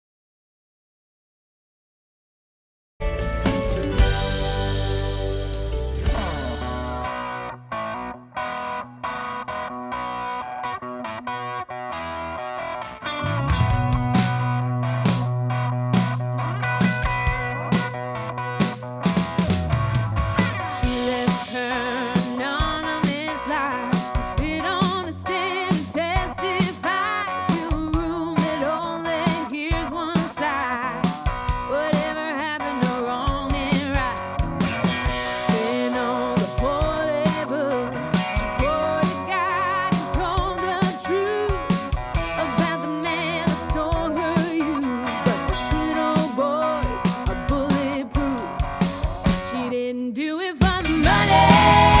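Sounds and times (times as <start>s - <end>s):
pop song with singing and guitar: 3.0s - 8.1s, 20.4s - 52.0s.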